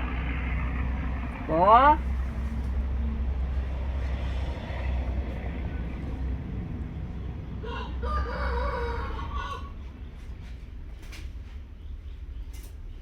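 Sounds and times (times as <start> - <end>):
rooster crowing: 7.6 - 9.9.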